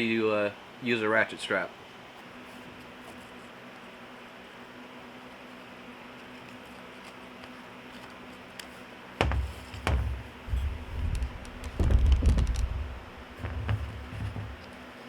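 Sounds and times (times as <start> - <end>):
faint steady hum: 0.0 - 15.0
low thumps: 9.2 - 14.6.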